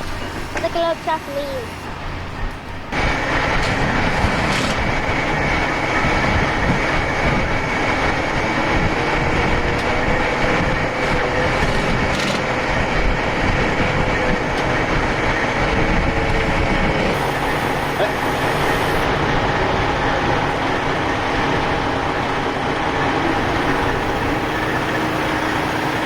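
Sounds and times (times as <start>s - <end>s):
heavy diesel machinery running: 0.0s - 26.0s
high whine: 13.0s - 26.0s.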